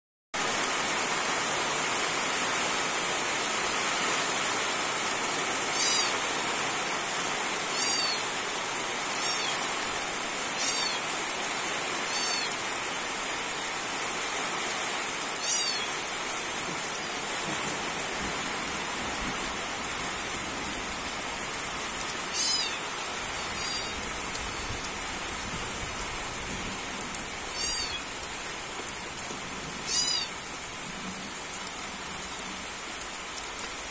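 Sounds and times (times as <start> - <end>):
steady rain falling: 0.4 - 33.9
short high-pitched calls: 5.8 - 6.2, 7.7 - 8.2, 9.2 - 9.6, 10.6 - 11.0, 12.1 - 12.5, 15.4 - 15.9, 22.3 - 22.8, 23.4 - 24.0, 27.6 - 28.0, 29.9 - 30.3.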